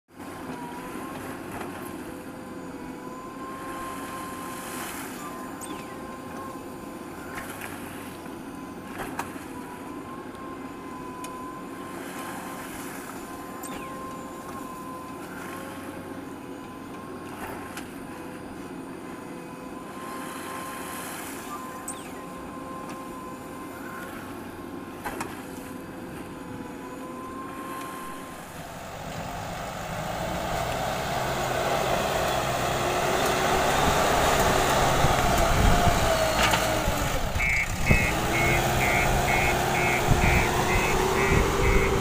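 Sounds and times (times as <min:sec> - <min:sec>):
diesel engine running: 0:00.2 - 0:42.0
high whine: 0:26.7 - 0:42.0.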